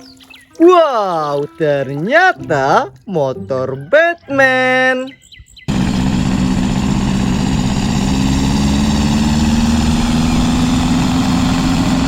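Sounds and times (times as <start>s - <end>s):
engine humming: 5.7s - 12.0s.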